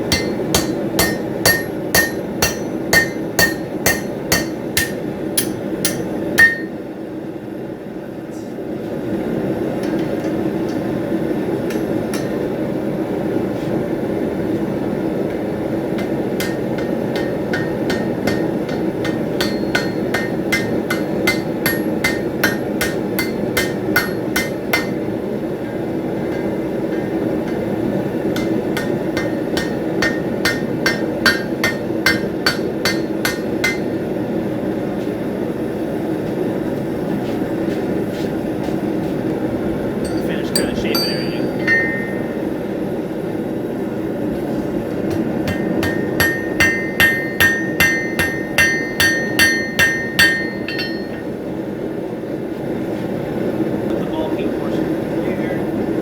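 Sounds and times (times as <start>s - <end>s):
hammer striking steel on anvil: 0.0s - 6.9s, 11.6s - 12.5s, 15.3s - 25.1s, 26.2s - 34.2s, 40.0s - 42.6s, 45.0s - 51.4s.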